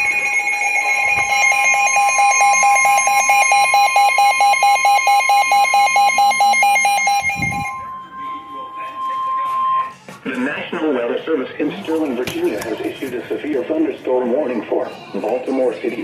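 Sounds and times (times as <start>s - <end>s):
rapid electronic beeping: 0.0s - 10.0s.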